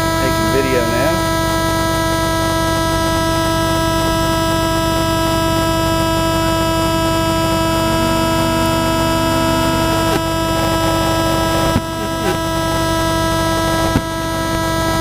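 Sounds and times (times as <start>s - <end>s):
drone propellers buzzing: 5.1s - 15.0s.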